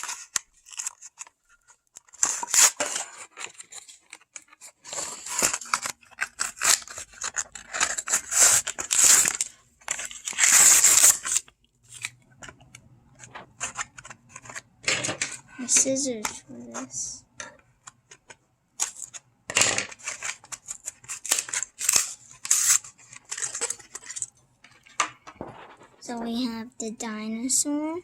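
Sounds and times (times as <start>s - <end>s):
plastic crinkling: 0.0s - 15.8s, 17.8s - 26.1s
cardboard tearing: 2.0s - 12.1s, 20.0s - 24.1s.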